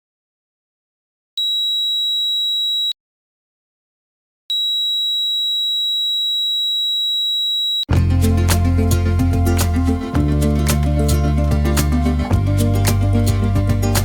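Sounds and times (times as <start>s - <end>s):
high-pitched alarm buzzer beep: 1.4s - 3.0s, 4.5s - 7.9s.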